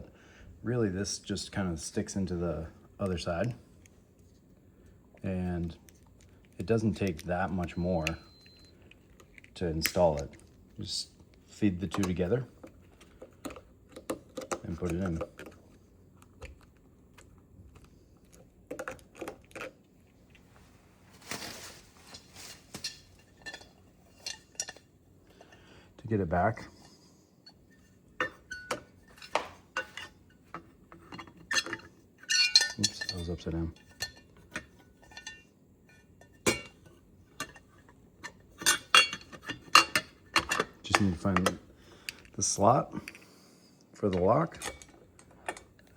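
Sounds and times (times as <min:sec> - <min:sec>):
scraping rustle: 0:20.4 - 0:23.3.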